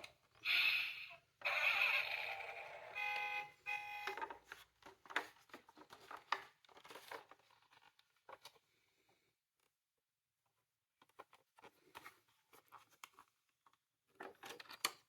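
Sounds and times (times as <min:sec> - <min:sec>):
toy car electronic siren: 0:00.5 - 0:04.2.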